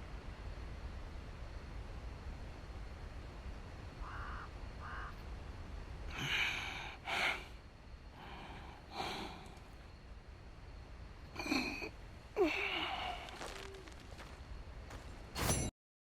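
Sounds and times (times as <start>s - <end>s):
faint short sounds: 11.4s - 14.4s.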